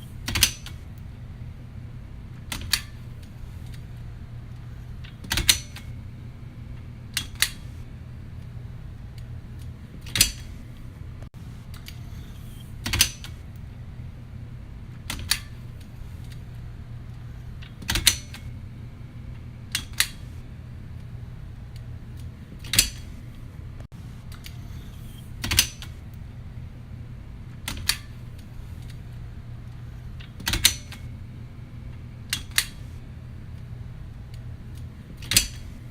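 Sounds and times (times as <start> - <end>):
low steady hum: 0.0 - 35.9
baby gate latch clicks: 35.2 - 35.7.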